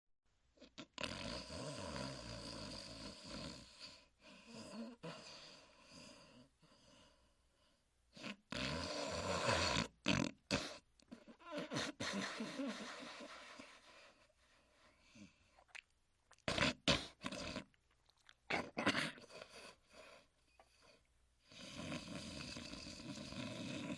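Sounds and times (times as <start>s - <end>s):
cartoon snoring: 0.6s - 6.5s, 8.2s - 13.8s, 16.4s - 17.7s, 21.5s - 23.9s.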